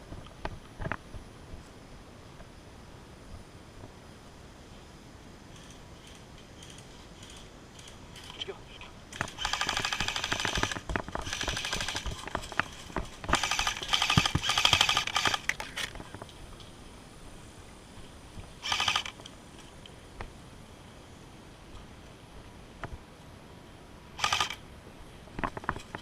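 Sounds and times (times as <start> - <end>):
airsoft guns firing full-auto: 9.2 - 12.3, 13.3 - 15.5, 18.6 - 19.2, 24.2 - 24.6.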